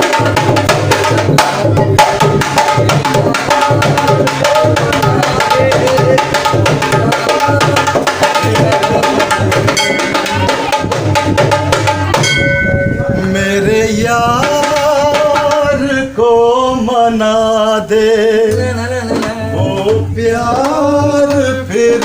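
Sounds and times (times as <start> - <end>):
hand drum strokes: 0.0 - 13.5.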